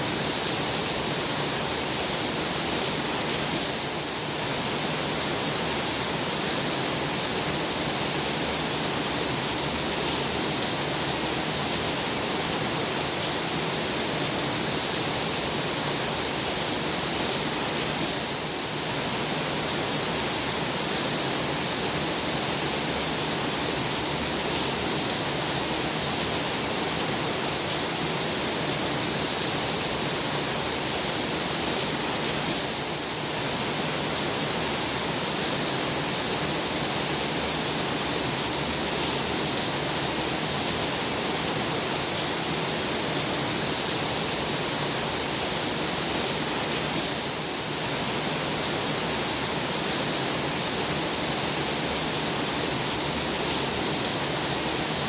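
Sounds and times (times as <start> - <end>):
heavy rain falling: 0.0 - 55.0.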